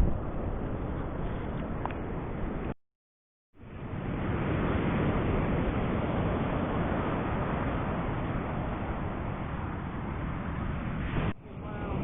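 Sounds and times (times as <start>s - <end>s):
wind buffeting microphone: 0.0s - 2.7s.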